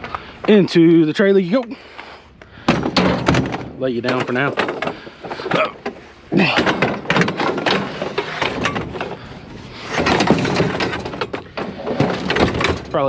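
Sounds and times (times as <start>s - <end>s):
metal chairs clanking and rattling: 2.6s - 13.0s.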